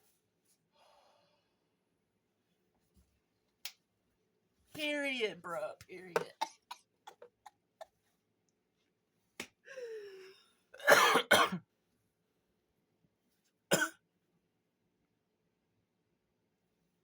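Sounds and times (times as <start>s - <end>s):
person coughing: 10.8s - 11.6s, 13.7s - 14.0s.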